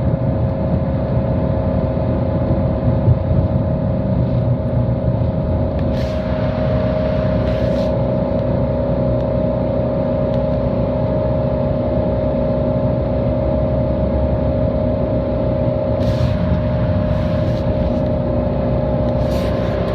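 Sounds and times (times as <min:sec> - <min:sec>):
bus engine whine and rumble: 0:00.0 - 0:19.9
short air hisses: 0:05.8 - 0:08.0, 0:16.0 - 0:18.0, 0:19.0 - 0:19.9.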